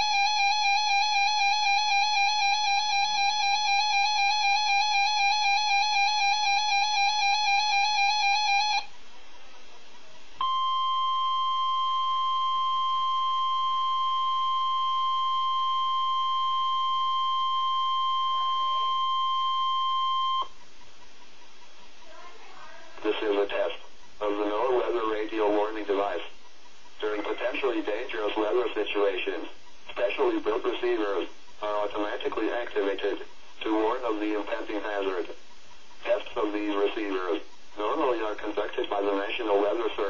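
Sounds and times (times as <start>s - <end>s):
steady alarm tone: 0.0s - 8.9s, 10.4s - 20.5s.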